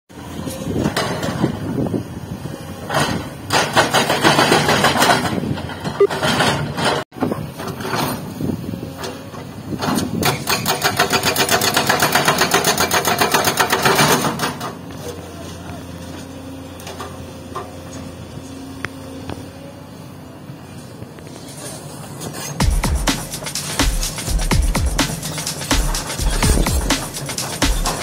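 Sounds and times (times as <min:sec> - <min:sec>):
diesel engine of heavy machine: 0:00.1 - 0:28.0
fast even pulsing: 0:22.6 - 0:28.0.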